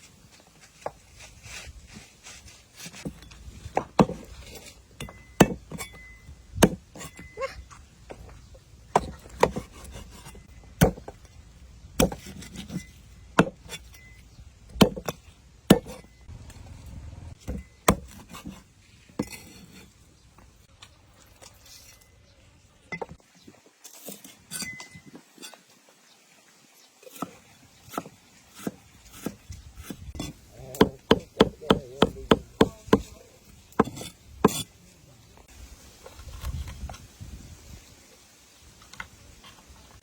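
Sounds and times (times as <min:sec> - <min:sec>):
knife chopping on wooden board: 0:06.6 - 0:07.1, 0:08.9 - 0:11.2, 0:12.0 - 0:12.8, 0:13.4 - 0:13.8, 0:14.7 - 0:16.0, 0:17.4 - 0:18.6, 0:27.1 - 0:33.2, 0:33.8 - 0:34.6.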